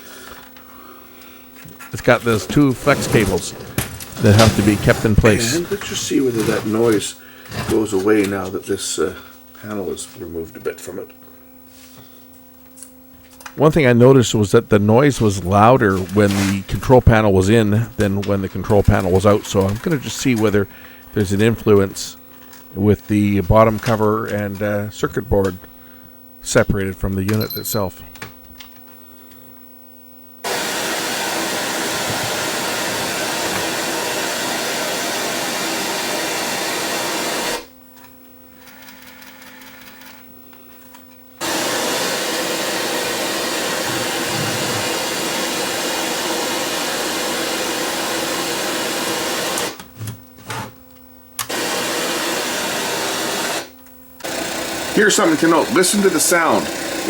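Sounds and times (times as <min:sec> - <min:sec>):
loud static hiss: 0:00.0 - 0:11.9, 0:30.3 - 0:37.8, 0:41.3 - 0:50.0, 0:51.4 - 0:57.0
steady low hum: 0:00.0 - 0:30.5, 0:42.0 - 0:46.8.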